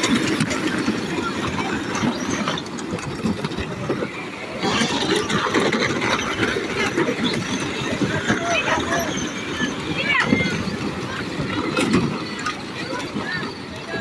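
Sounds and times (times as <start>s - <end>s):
steady clatter: 0.0s - 14.0s
toy car gearboxes whirring: 0.0s - 14.0s.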